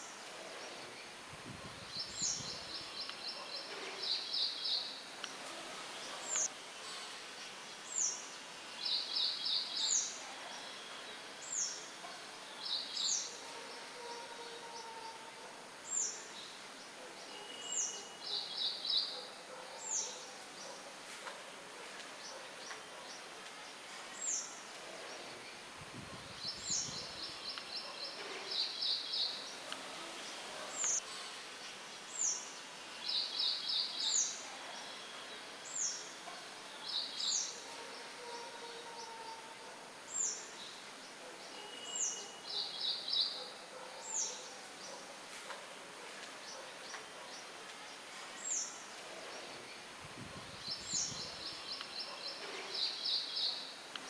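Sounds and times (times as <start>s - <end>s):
songbirds singing: 0.0s - 5.4s, 6.0s - 6.5s, 22.2s - 31.0s, 46.2s - 54.0s
light wind in leaves: 0.0s - 14.0s, 15.7s - 38.2s, 39.9s - 54.0s.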